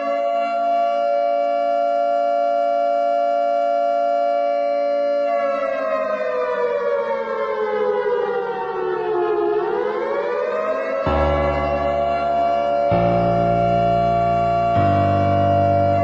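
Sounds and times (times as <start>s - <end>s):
siren-like wail: 0.0s - 16.0s
low steady tone: 11.1s - 16.0s.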